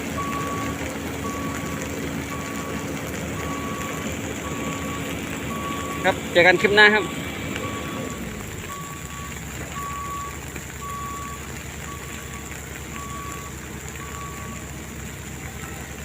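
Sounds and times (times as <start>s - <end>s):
diesel engine running: 0.0s - 16.0s
reversing alarm beeping: 0.2s - 2.8s, 3.4s - 14.7s.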